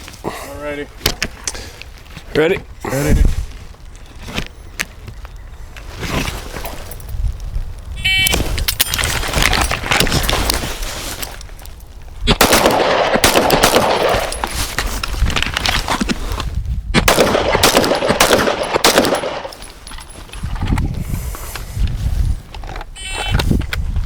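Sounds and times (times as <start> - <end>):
suppressed rifle shots: 12.3 - 14.4, 17.0 - 19.5.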